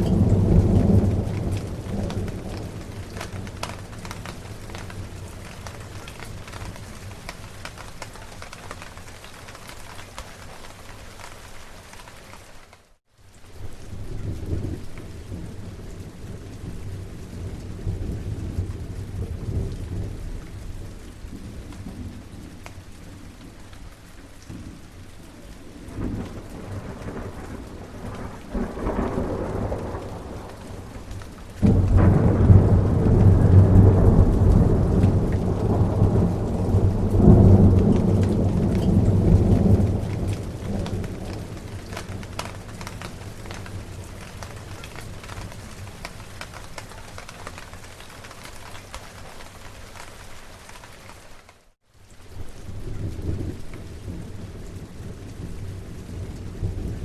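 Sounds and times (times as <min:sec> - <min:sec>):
loud thunderclap: 0:00.0 - 0:07.8, 0:25.9 - 0:43.9
rolling thunder: 0:00.0 - 0:08.2, 0:24.5 - 0:46.6
steady rain: 0:00.0 - 0:57.0.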